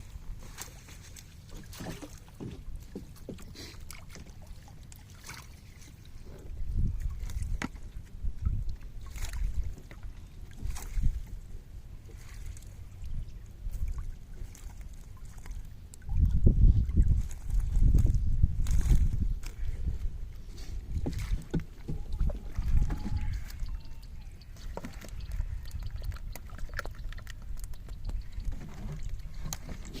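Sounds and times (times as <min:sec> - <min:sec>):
water splashes: 0:00.0 - 0:30.0
boat knocks: 0:01.6 - 0:04.4, 0:21.0 - 0:23.2.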